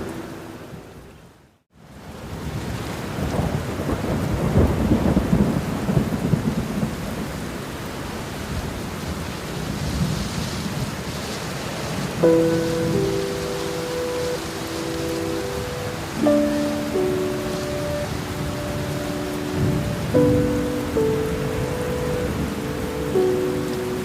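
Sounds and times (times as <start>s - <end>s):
heavy rain falling: 1.8s - 24.0s
thunder rumble: 2.5s - 7.3s, 9.5s - 24.0s
steady musical tones: 12.2s - 24.0s.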